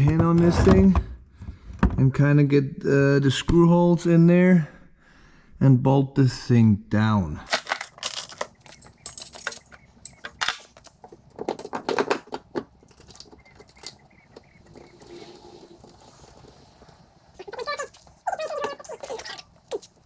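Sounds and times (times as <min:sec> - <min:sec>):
metallic clicks and clinks: 0:07.5 - 0:20.0.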